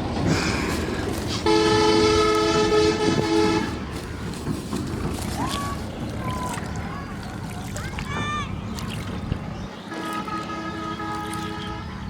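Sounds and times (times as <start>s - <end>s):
horn sounding a low chord: 1.4s - 3.9s.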